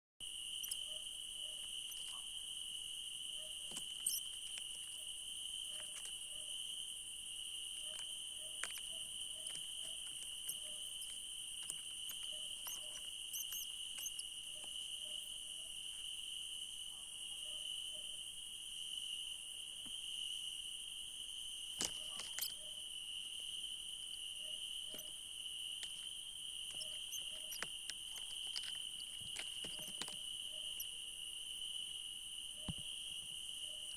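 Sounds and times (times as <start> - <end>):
night insects trilling: 0.2 - 33.9
faint clicks and rustles: 3.5 - 6.6, 7.7 - 14.8, 21.7 - 22.8, 24.0 - 30.9.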